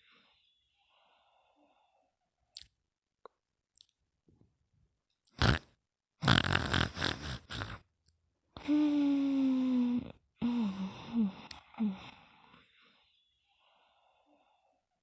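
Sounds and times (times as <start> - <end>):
slowed-down snoring: 6.2 - 7.8.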